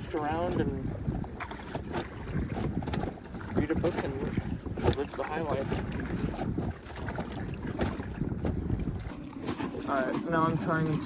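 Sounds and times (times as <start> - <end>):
water lapping against boat: 0.0 - 11.0
wind buffeting microphone: 0.0 - 11.0.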